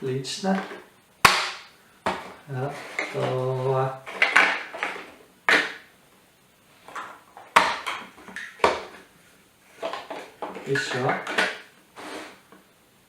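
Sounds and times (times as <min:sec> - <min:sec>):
plastic toy blocks clattering: 0:04.1 - 0:05.8, 0:09.8 - 0:11.7.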